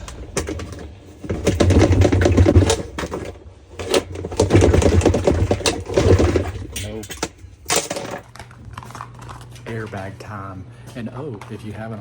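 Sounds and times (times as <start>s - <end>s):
metal hooks clicking and clattering: 0.0s - 9.7s.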